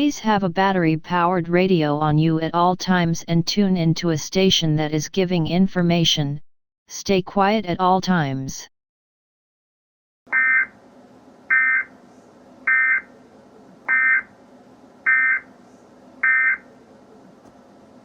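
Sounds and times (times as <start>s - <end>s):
faint steady hum: 10.3s - 18.0s.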